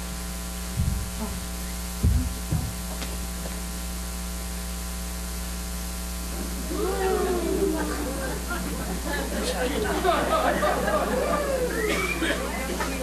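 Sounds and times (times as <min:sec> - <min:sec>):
electrical mains hum: 0:00.0 - 0:13.0
low dull thumps: 0:00.6 - 0:03.4.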